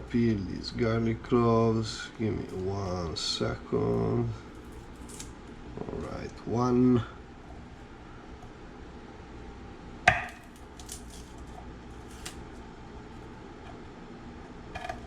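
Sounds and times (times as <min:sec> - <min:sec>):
garlic skin crackling: 0:04.5 - 0:06.2, 0:10.1 - 0:13.3.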